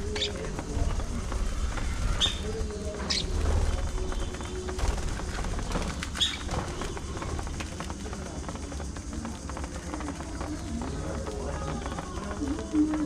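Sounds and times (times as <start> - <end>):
budgerigars chirping: 6.2 - 6.6.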